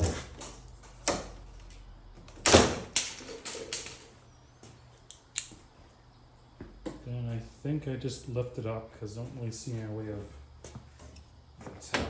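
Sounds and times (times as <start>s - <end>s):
small clicks: 5.1s - 5.6s.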